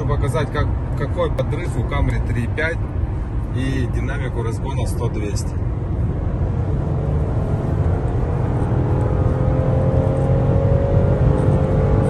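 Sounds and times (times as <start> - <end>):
road rumble: 0.0 - 12.0
car engine accelerating hard: 5.6 - 12.0.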